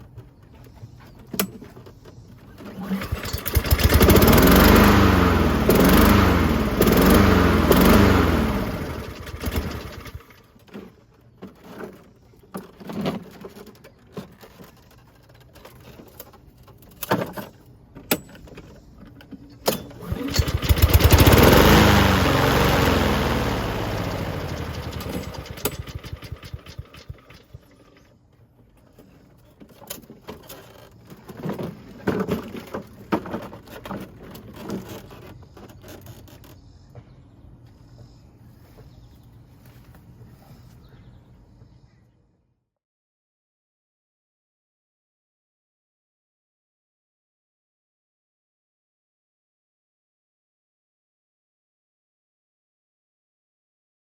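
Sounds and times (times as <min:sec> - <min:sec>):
lawn mower engine running: 0:02.4 - 0:10.9, 0:19.7 - 0:28.1.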